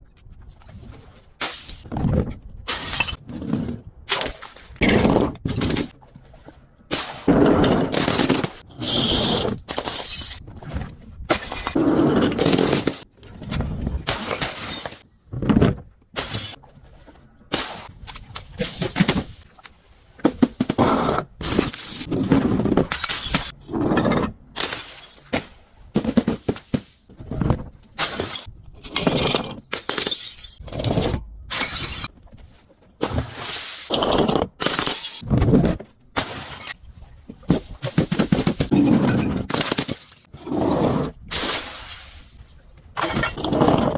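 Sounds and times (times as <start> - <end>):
glass breaking: 9.7 - 10.4, 29.7 - 30.6.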